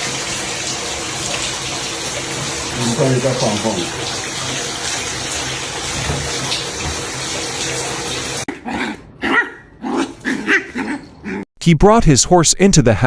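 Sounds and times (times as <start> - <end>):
water pouring through roof: 0.0 - 8.5.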